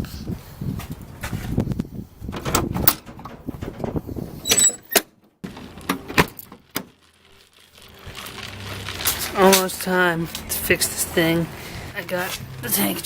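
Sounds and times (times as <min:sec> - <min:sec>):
knocks and clunks: 0:02.3 - 0:06.9.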